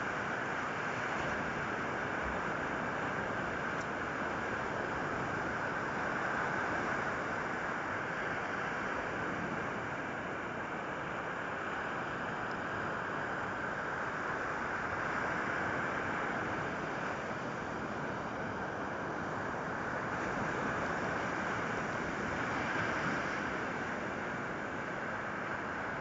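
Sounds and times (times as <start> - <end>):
sea surf rushing: 14.1 - 26.0.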